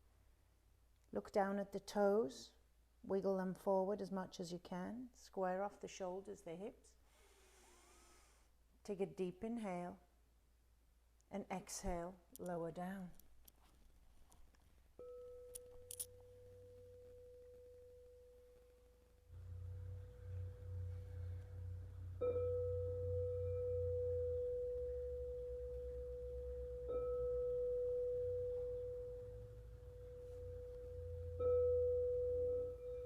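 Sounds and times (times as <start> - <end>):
low hum: 15.0 - 33.0
singing bowl ringing: 15.0 - 33.0.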